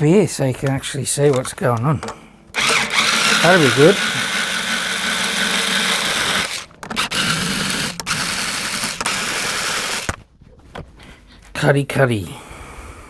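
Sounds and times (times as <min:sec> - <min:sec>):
motorized string winder whirring: 0:00.6 - 0:10.2.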